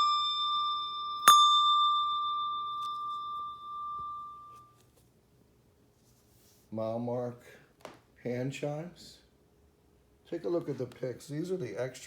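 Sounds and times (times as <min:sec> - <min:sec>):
handbell ringing high note: 0:00.0 - 0:04.8.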